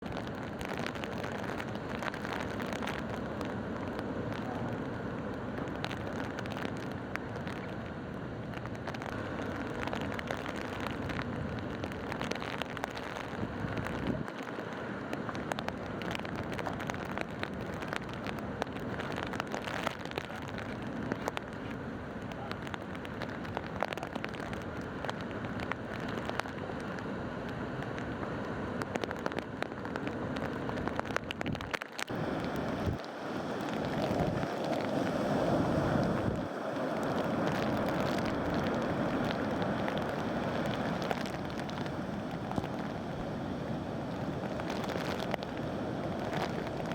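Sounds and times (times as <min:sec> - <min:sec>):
gusting wind buffeting microphone: 0:30.9 - 0:46.9
heavy surf rushing: 0:31.4 - 0:46.9.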